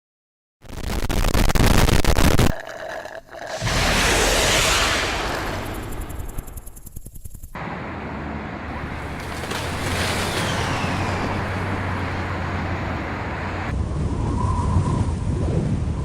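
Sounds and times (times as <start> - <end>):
falling whoosh: 3.5 - 7.1
loud steady rushing noise: 3.6 - 7.0.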